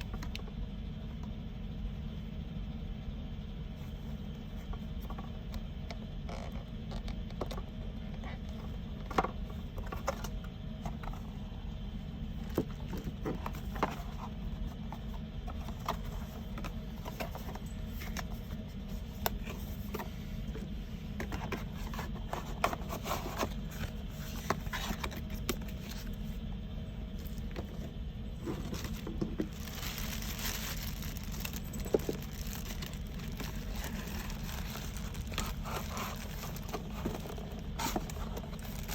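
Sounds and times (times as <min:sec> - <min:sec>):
low hum: 0:00.0 - 0:38.9
crinkling plastic or paper: 0:21.2 - 0:26.4, 0:27.2 - 0:38.9.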